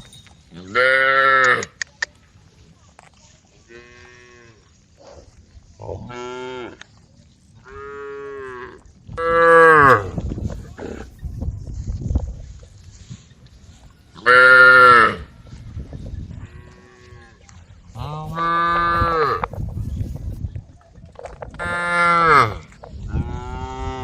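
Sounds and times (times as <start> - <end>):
cows mooing: 21.6 - 24.0.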